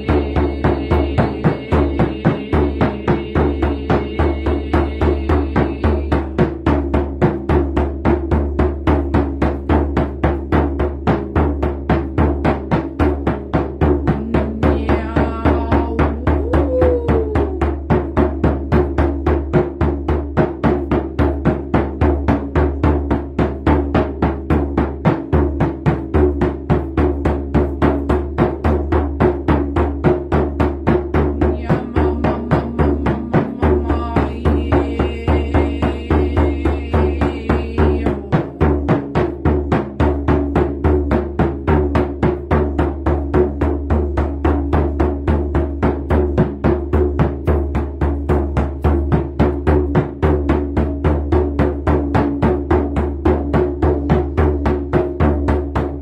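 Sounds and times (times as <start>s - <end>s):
hand drum beating: 0.0s - 56.0s.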